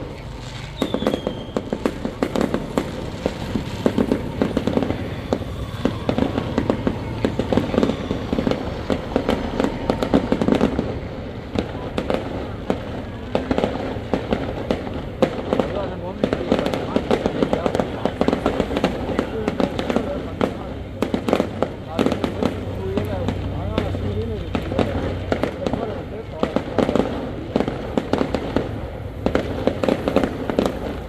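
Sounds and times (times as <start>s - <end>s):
fireworks crackling and banging: 0.0s - 31.0s
firework falling whistle: 0.4s - 12.6s.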